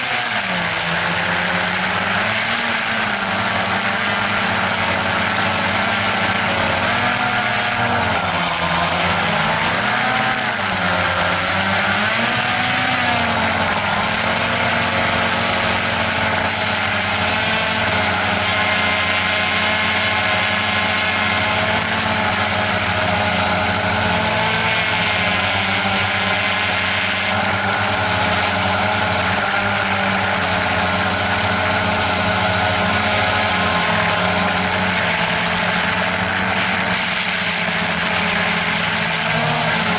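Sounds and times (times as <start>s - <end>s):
drone propellers whining: 0.0s - 39.9s.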